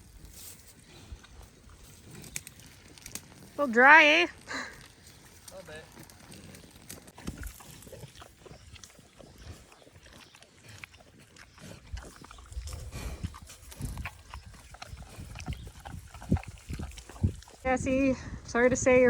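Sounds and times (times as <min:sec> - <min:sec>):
pig grunting: 0:05.6 - 0:17.6.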